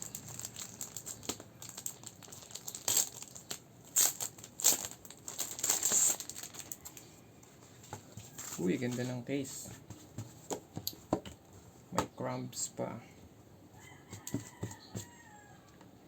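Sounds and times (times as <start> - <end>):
packaging crinkling and rustling: 0.0 - 7.1.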